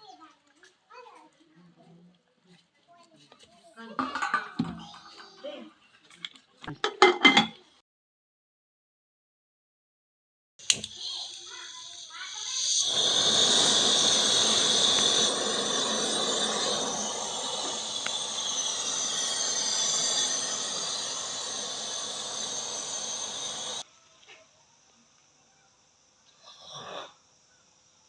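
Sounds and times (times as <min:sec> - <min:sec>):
chicken sizzling in hot oil: 0:10.6 - 0:24.0.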